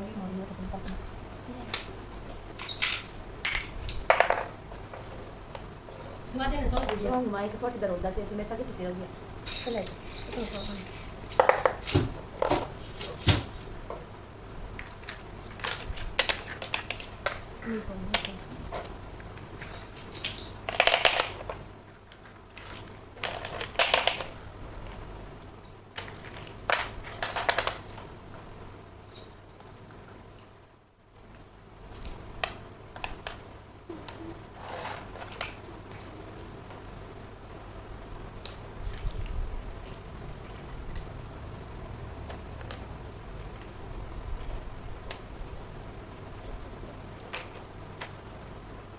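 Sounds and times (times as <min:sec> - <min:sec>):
toy kitchen pieces clicking: 0:02.6 - 0:04.5, 0:14.8 - 0:17.4, 0:19.6 - 0:21.6, 0:22.6 - 0:24.4, 0:25.9 - 0:28.0.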